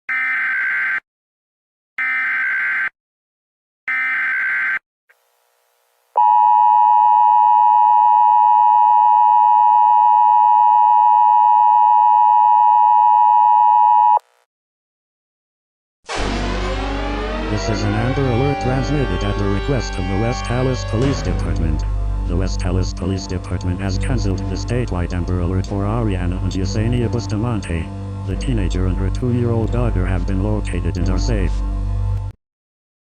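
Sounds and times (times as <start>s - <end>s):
two-tone attention signal: 16.1s - 21.6s.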